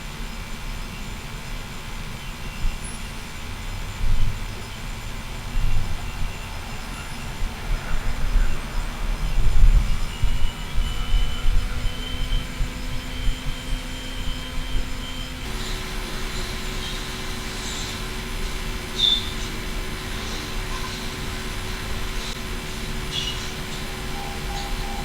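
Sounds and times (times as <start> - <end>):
electronic interference hum: 15.4 - 25.0
thin broken high whine: 15.5 - 25.0.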